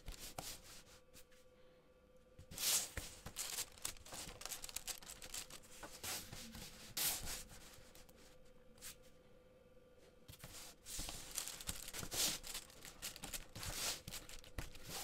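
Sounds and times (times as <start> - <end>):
plastic bricks scraping and clicking: 3.3 - 5.7, 11.1 - 15.0.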